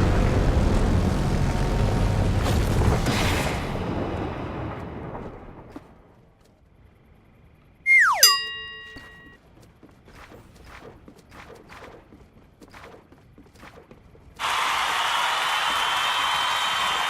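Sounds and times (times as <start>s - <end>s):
falling cartoon whistle: 7.9s - 9.2s.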